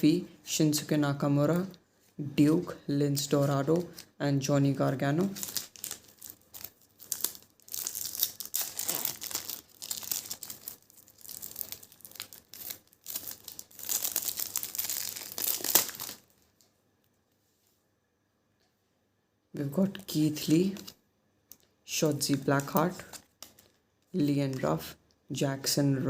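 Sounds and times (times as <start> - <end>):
plastic wrapper crinkling and tearing: 5.2 - 16.7, 19.9 - 24.6.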